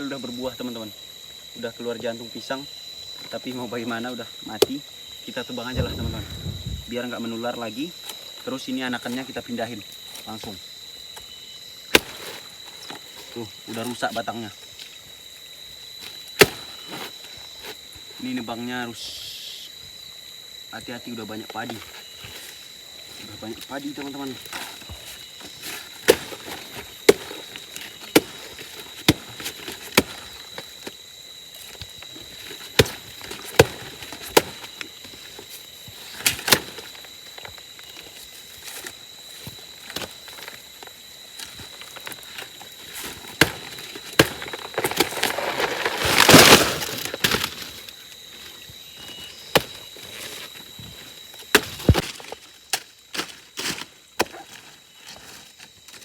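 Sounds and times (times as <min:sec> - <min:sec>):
blade chopping plant trunk: 0:05.7 - 0:07.0, 0:28.0 - 0:30.3, 0:32.6 - 0:34.8, 0:43.1 - 0:47.8, 0:49.5 - 0:49.8, 0:51.5 - 0:54.4
plant falling with rustling crash: 0:05.7 - 0:07.0, 0:43.3 - 0:47.8.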